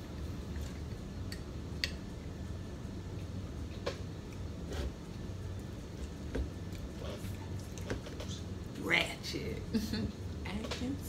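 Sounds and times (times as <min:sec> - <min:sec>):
steady low hum: 0:00.0 - 0:11.0
person chewing food: 0:03.1 - 0:08.6.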